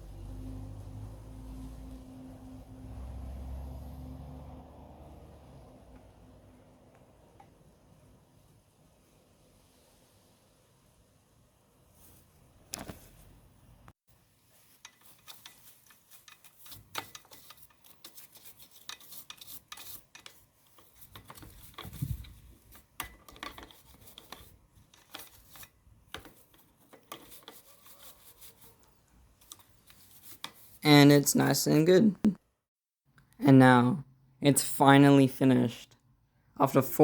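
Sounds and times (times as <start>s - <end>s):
rubbing and scraping on bicycle: 11.9s - 13.5s, 14.2s - 31.7s.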